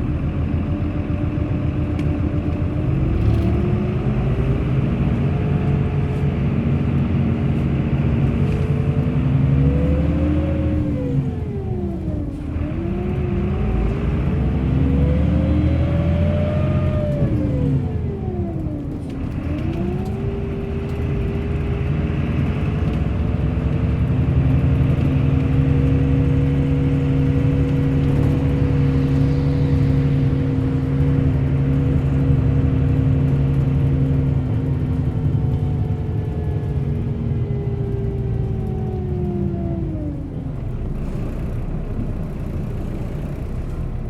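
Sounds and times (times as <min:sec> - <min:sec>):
bus engine drone: 0:00.0 - 0:44.0
road rumble: 0:00.0 - 0:44.0.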